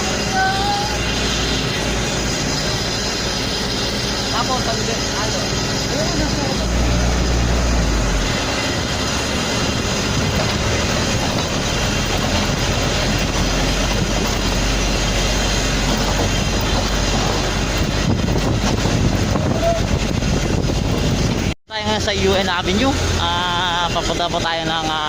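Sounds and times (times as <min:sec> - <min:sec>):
vehicle rumble: 0:00.0 - 0:25.0.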